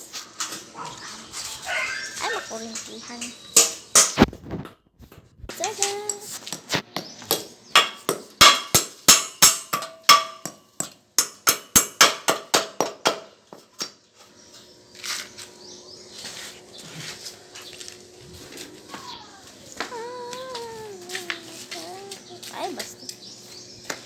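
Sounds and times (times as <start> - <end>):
hammer striking metal: 3.6 - 4.2, 7.3 - 13.3.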